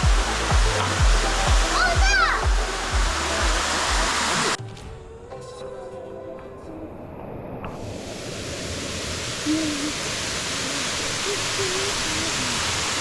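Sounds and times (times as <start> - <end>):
waterfall rushing: 0.0 - 4.6, 7.8 - 13.0.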